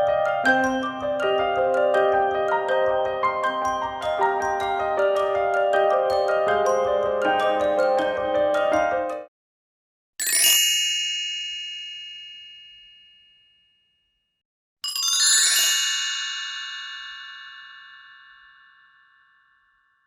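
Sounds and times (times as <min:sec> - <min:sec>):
bright metallic chime: 0:14.9 - 0:20.0.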